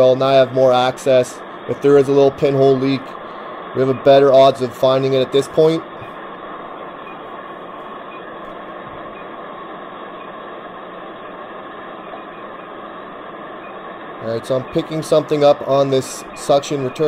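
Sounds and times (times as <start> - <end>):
faint steady tones: 0.0 - 17.0
mechanical hum and hiss: 0.0 - 17.0.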